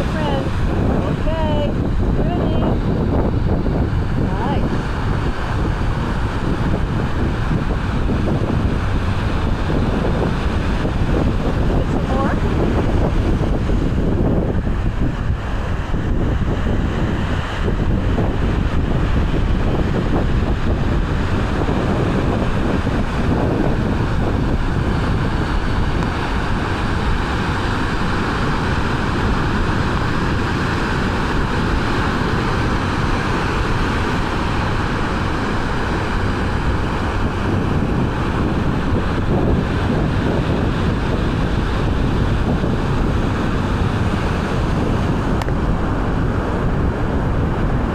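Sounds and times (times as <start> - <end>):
ocean surf: 0.0 - 47.9
wind buffeting microphone: 0.0 - 47.9.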